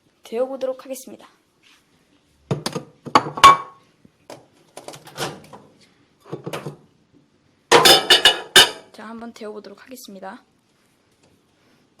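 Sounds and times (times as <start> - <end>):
plate knocking and clattering: 7.7 - 8.8.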